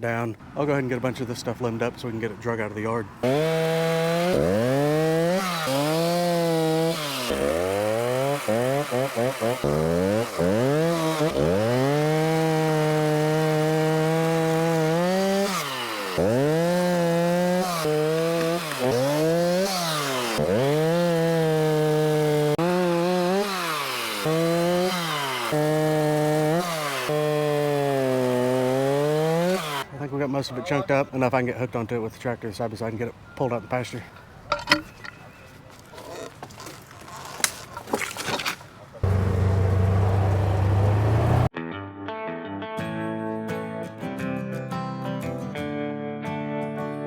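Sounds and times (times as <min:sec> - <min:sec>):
chainsaw cutting wood: 0:03.2 - 0:29.9, 0:36.0 - 0:41.5.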